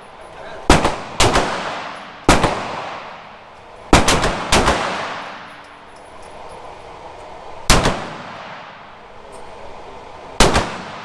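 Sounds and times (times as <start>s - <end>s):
pistol shots with echo: 0.6s - 5.6s, 7.7s - 8.9s, 10.4s - 11.0s.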